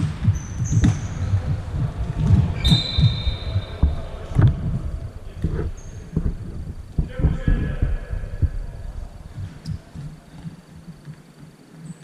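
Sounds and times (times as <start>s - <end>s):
ball kicked and bouncing: 0.0s - 11.2s
high squeak: 2.6s - 3.7s.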